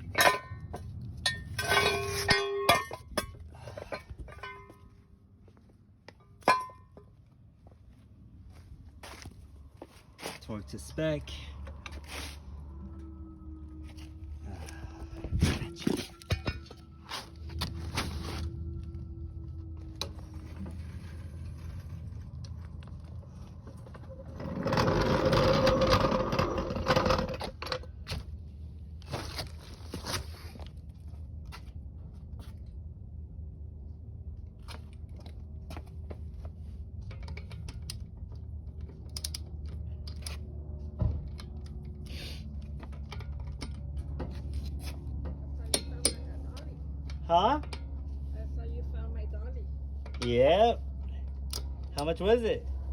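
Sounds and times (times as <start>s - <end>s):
metal scraping: 0.0s - 4.9s, 10.0s - 27.9s.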